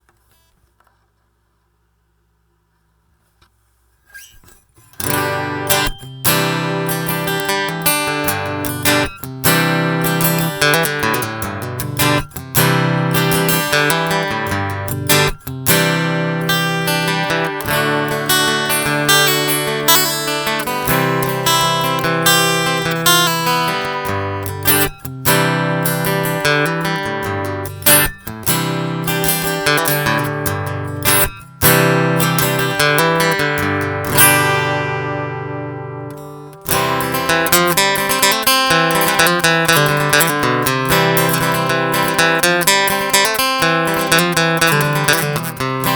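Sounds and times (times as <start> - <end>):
acoustic guitar chords strummed: 4.4 - 45.9.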